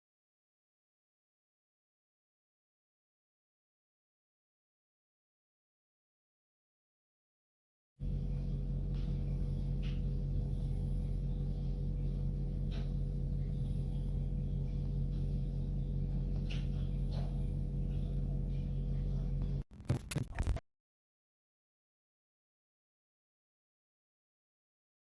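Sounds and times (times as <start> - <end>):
low hum with thin high tone: 8.0 - 20.6
crackling: 19.7 - 20.6.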